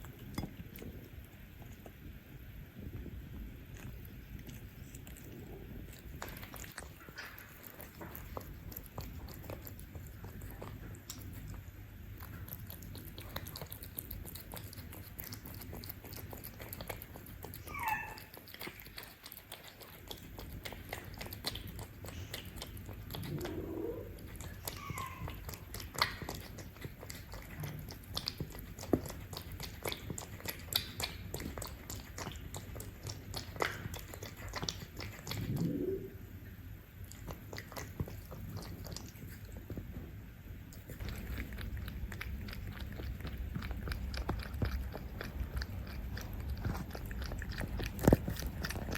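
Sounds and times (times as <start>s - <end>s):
cats chewing food: 0.0s - 48.9s
cat cries: 24.6s - 25.5s.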